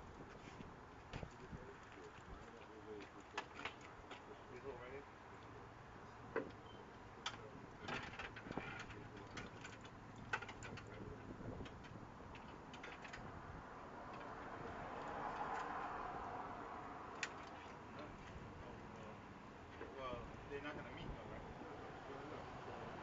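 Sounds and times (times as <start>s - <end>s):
light clicks and taps of parts: 7.2s - 13.3s.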